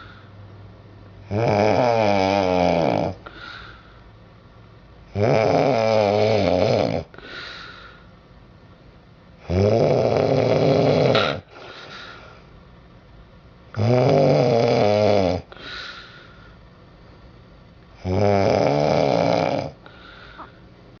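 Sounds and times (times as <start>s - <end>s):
quiet breath: 0.0s - 0.5s, 3.2s - 4.2s, 7.1s - 8.2s, 11.5s - 12.6s, 15.5s - 17.3s, 19.8s - 21.0s
woman snoring: 1.2s - 3.8s, 5.1s - 8.0s, 9.4s - 11.7s, 13.8s - 15.9s, 18.0s - 20.5s.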